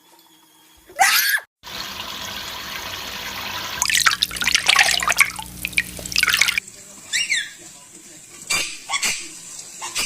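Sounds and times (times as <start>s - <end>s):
water splashes: 1.6s - 6.6s
water running from a tap: 1.6s - 10.0s.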